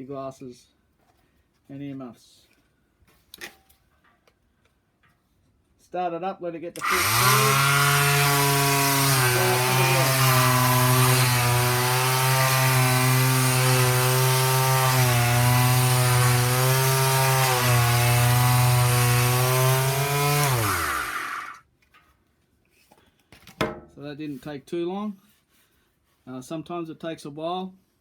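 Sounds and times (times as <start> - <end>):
orbital sander motor hum: 6.8 - 21.6.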